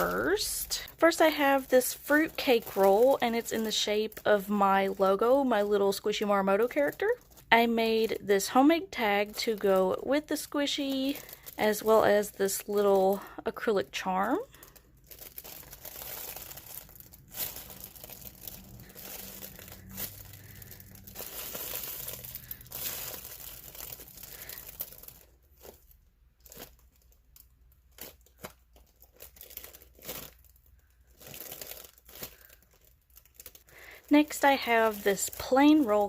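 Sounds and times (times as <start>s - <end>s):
cake squished by hand crinkling: 14.5s - 36.0s.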